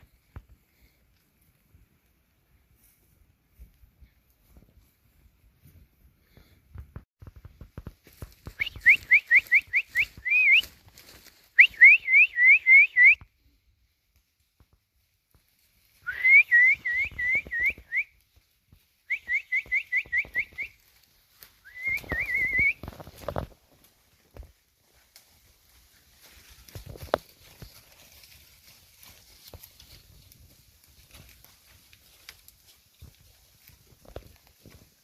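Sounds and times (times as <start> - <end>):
person whistling: 8.6 - 10.6, 11.6 - 13.2, 16.0 - 18.1, 21.6 - 22.8.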